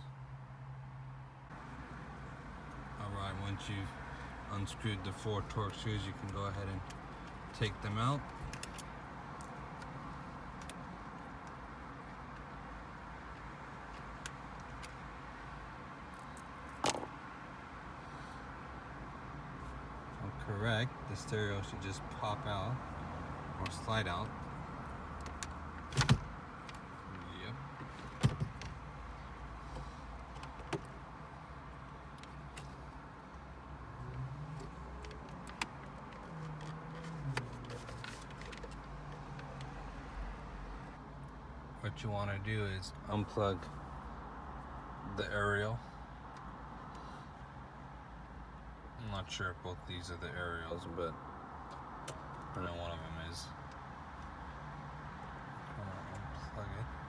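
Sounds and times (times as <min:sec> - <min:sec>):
small parts and tools handled: 0:16.1 - 0:17.2, 0:34.5 - 0:39.8.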